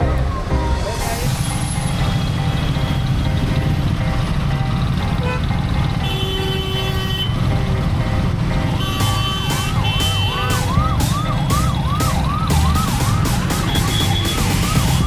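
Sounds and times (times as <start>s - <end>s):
low vehicle rumble: 0.0s - 15.0s
siren yelping: 10.0s - 15.0s.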